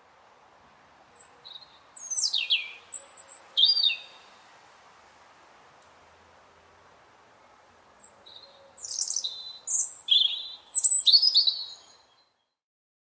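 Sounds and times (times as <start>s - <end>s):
faint background hiss: 0.0s - 12.6s
robin singing: 1.2s - 4.4s, 8.0s - 12.5s.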